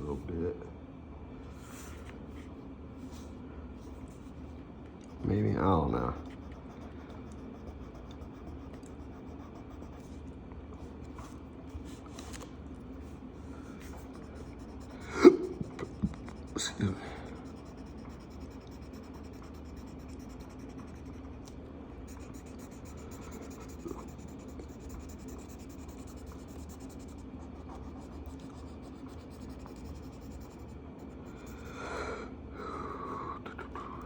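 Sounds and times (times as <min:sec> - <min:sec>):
marker scratching on paper: 0:05.0 - 0:10.2, 0:13.8 - 0:21.5, 0:22.1 - 0:31.7.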